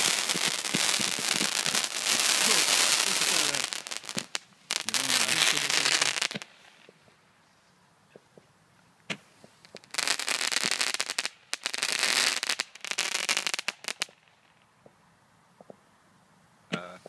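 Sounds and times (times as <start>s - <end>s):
firework crackling: 0.0s - 6.9s, 9.1s - 14.6s.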